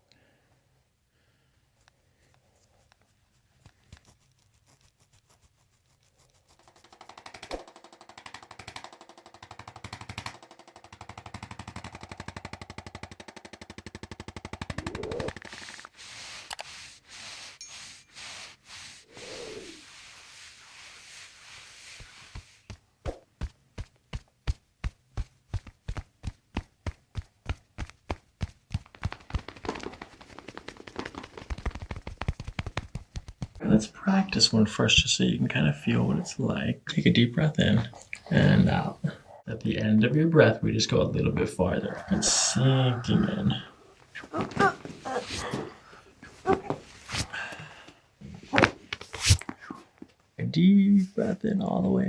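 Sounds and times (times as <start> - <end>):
massage gun percussive strokes: 2.9 - 39.0.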